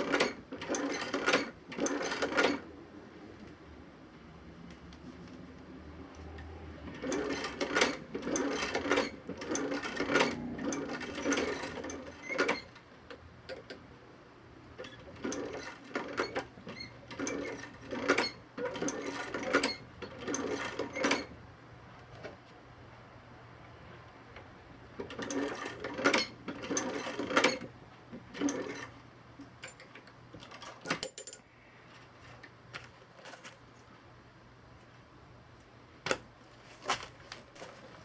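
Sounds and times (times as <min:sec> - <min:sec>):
sewing machine stitching: 0:00.0 - 0:02.6, 0:06.8 - 0:12.8, 0:14.8 - 0:21.3, 0:25.0 - 0:27.7.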